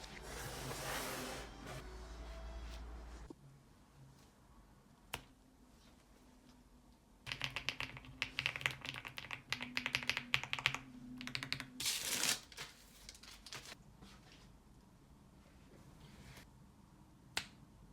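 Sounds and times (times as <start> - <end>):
mechanical keyboard typing: 7.3 - 11.8.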